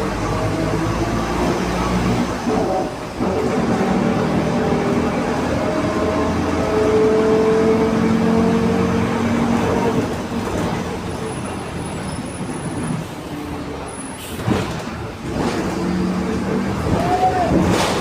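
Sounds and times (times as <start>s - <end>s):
diesel bus engine running: 0.0s - 18.0s
air brake hisses: 14.1s - 14.5s.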